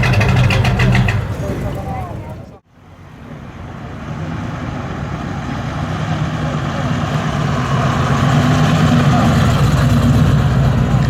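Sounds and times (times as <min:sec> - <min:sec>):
car engine running: 0:00.0 - 0:05.7.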